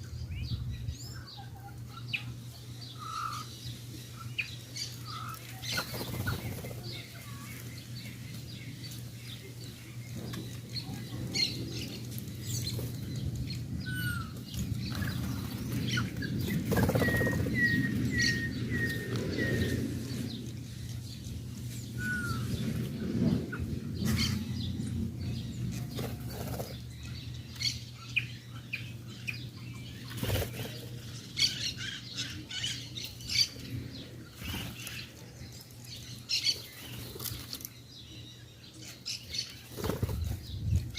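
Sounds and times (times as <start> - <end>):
bird wings fluttering: 5.7 - 7.0, 14.5 - 17.6, 25.8 - 26.8, 30.1 - 30.9, 39.6 - 40.9.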